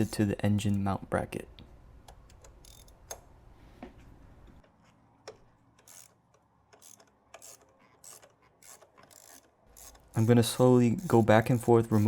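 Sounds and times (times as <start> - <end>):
ratchet wrench clicking: 2.3 - 3.2, 5.8 - 12.0.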